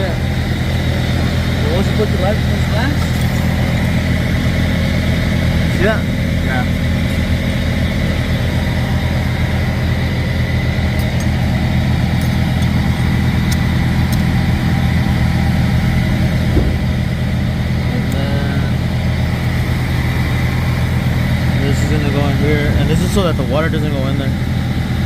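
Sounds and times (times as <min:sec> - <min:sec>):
diesel truck engine idling: 0:00.0 - 0:25.0.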